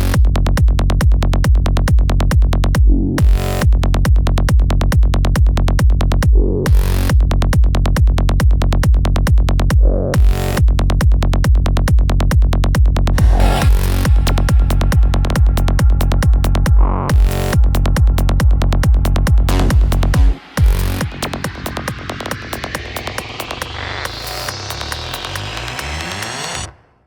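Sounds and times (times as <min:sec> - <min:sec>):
trance music with fast kick drum: 0:00.0 - 0:26.8
sweeping fills: 0:13.2 - 0:24.2.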